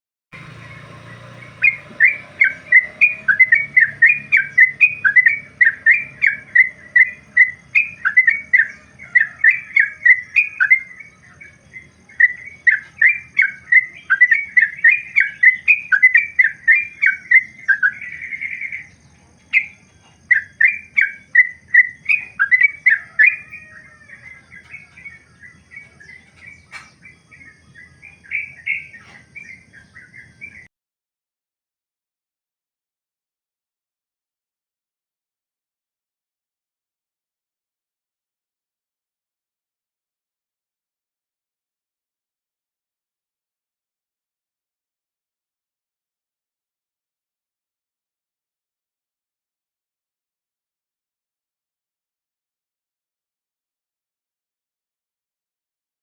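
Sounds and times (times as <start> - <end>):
bulbul singing bubbly whistles: 1.6 - 11.1.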